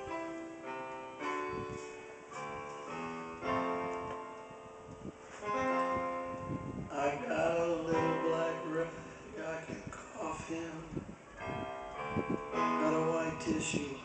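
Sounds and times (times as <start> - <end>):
piano playing slow chords: 0.0 - 14.0.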